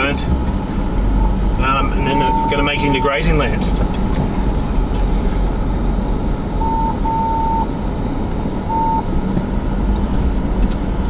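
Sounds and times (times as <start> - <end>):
bulldozer diesel engines rumbling: 0.0 - 11.0
reversing alarm beeps: 1.8 - 3.4, 6.6 - 7.7, 8.7 - 9.1.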